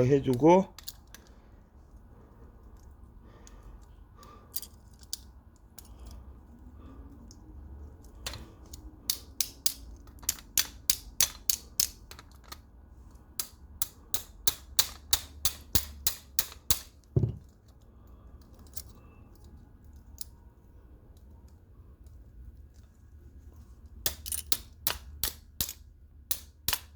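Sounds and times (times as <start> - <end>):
sharp metal clicks: 8.2 - 12.6, 13.4 - 17.0
dull thump: 17.2 - 17.4.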